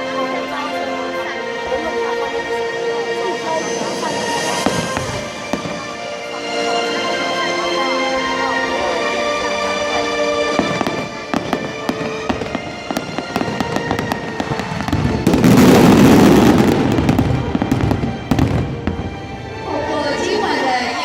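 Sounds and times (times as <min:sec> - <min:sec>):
music: 0:00.0 - 0:21.0
fireworks crackling and banging: 0:03.5 - 0:07.5, 0:08.8 - 0:20.2.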